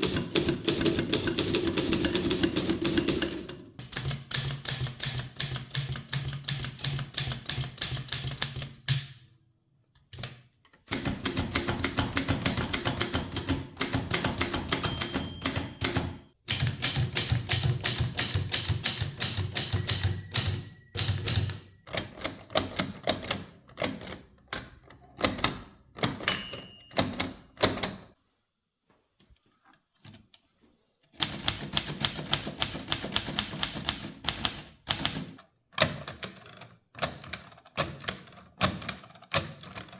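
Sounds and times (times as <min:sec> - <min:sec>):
manual typewriter clacking: 0:00.0 - 0:09.1, 0:10.2 - 0:24.6, 0:25.2 - 0:28.0, 0:31.2 - 0:39.9
typewriter margin bell ringing: 0:14.7 - 0:16.2, 0:19.3 - 0:22.2, 0:26.2 - 0:28.1.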